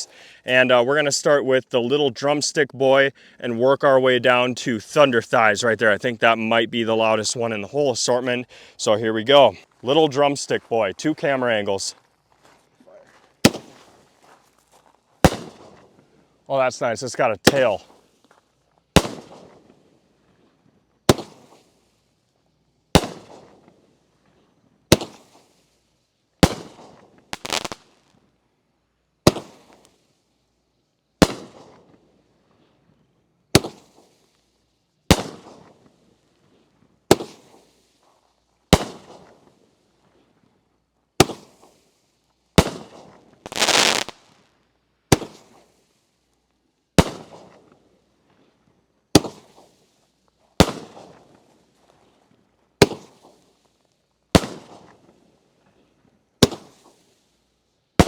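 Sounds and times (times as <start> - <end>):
fireworks bangs with crackle: 13.4 - 14.4, 15.2 - 16.0, 17.4 - 18.2, 18.9 - 19.8, 21.0 - 21.9, 22.9 - 23.8, 24.9 - 25.6, 26.4 - 28.2, 29.2 - 29.9, 31.2 - 32.0, 33.5 - 34.4, 35.1 - 36.1, 37.1 - 38.1, 38.7 - 40.2, 41.2 - 41.9, 42.6 - 44.5, 45.1 - 45.9, 47.0 - 47.7, 49.1 - 50.0, 50.6 - 52.2, 52.8 - 53.6, 54.3 - 55.1, 56.4 - 57.2.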